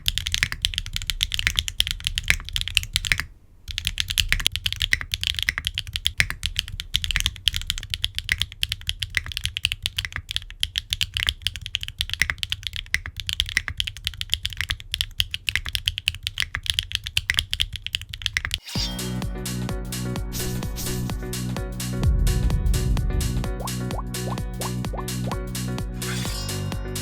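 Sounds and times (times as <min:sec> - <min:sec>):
mechanical keyboard typing: 0:00.0 - 0:18.6
electronic music: 0:18.6 - 0:27.0.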